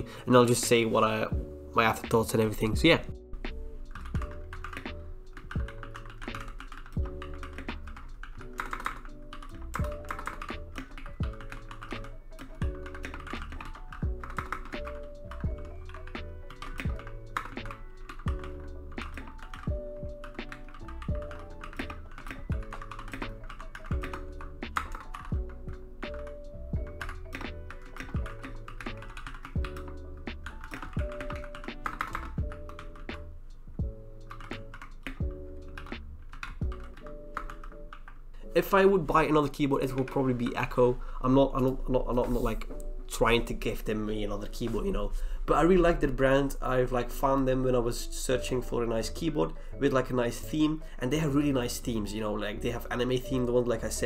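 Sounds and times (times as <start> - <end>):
music with steady beat: 0.0 - 38.1, 41.6 - 50.2
mechanical keyboard typing: 3.9 - 33.2, 34.2 - 38.2, 39.8 - 40.6.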